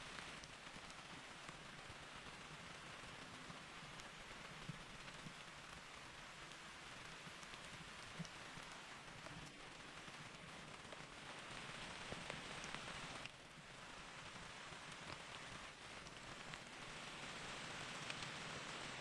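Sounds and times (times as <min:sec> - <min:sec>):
raindrop ticks: 0:00.1 - 0:19.0
rain hissing: 0:09.6 - 0:19.0.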